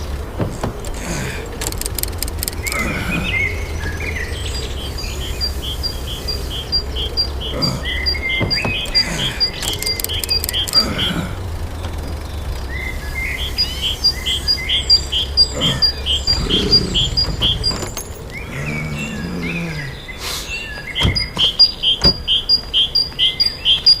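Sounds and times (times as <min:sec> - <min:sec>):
birds chirping: 0:00.0 - 0:24.0
sharp clicks: 0:00.1 - 0:02.9, 0:08.2 - 0:12.7.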